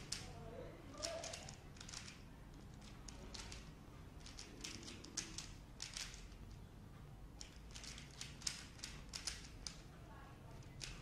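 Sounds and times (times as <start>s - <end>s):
puzzle cube plastic clicks: 0.0s - 0.3s, 1.0s - 6.4s, 7.4s - 9.8s, 10.5s - 11.0s.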